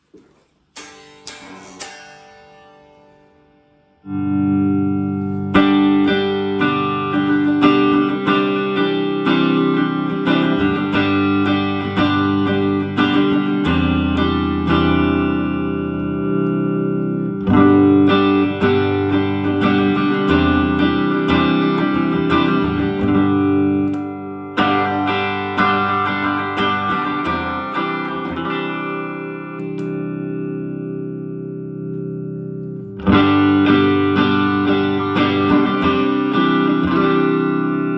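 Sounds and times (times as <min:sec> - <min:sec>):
electric guitar chords and notes: 0:00.0 - 0:37.9.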